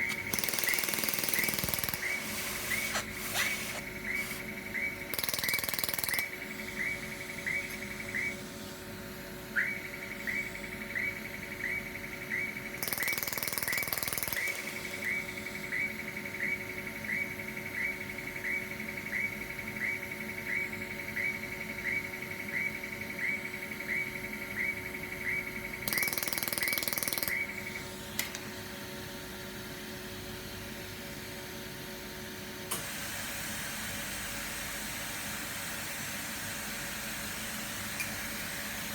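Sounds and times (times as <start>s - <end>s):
laser welder sharp pulses: 0.0s - 8.4s, 12.8s - 15.3s, 25.9s - 27.5s
machine hum: 0.0s - 32.8s.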